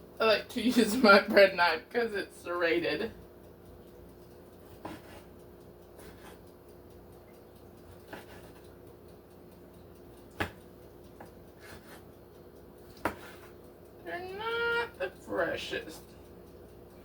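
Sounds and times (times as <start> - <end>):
faint steady hum: 0.0 - 17.0
knife cutting tomatoes: 4.6 - 6.5, 7.8 - 8.8, 10.2 - 12.1, 12.8 - 13.6.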